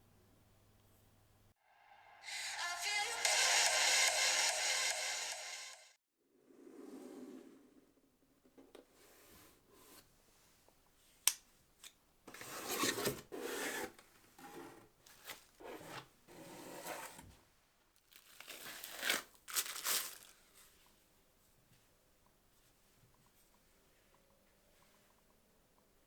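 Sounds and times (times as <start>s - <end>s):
packaging tearing and crinkling: 18.0s - 20.4s.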